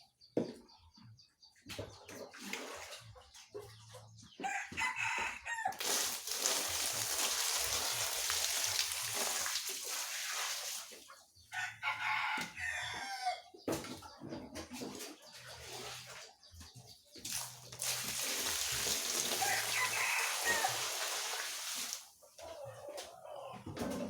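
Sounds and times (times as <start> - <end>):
chicken clucking: 11.0 - 17.2, 22.2 - 24.0.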